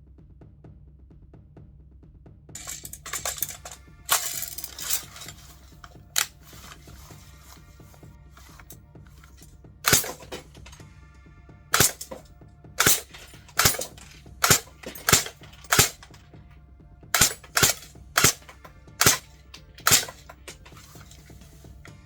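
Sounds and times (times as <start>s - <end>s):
airsoft rifle firing single shots: 9.8s - 10.7s, 11.8s - 12.2s, 12.8s - 16.2s, 17.2s - 21.3s.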